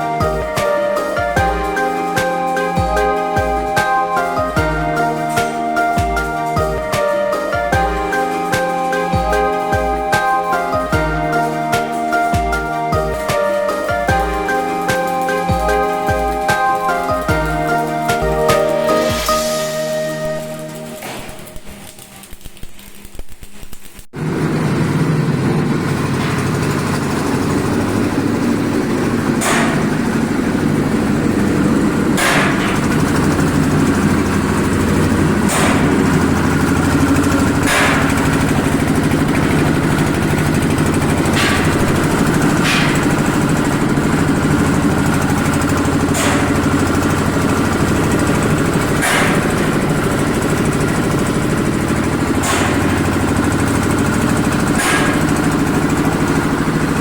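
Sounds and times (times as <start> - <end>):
engine running: 0.0 - 21.7, 24.1 - 57.0
sharp knock or clank: 29.4 - 30.2, 32.2 - 33.0, 35.5 - 36.3, 37.6 - 38.2, 41.3 - 43.8, 46.1 - 46.7, 49.0 - 49.8, 52.4 - 53.1, 54.7 - 55.4.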